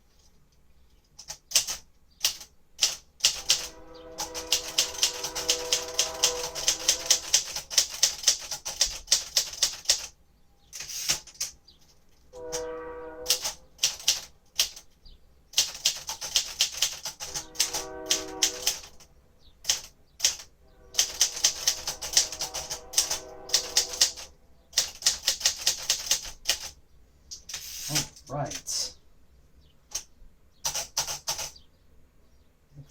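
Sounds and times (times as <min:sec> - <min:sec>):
typewriter key strikes: 0:01.2 - 0:03.6
typewriter margin bell ringing: 0:03.3 - 0:08.5.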